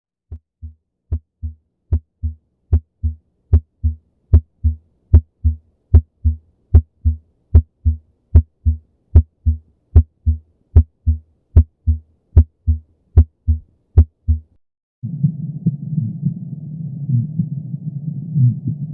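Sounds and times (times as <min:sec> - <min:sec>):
heartbeat through stethoscope: 0:00.3 - 0:14.5.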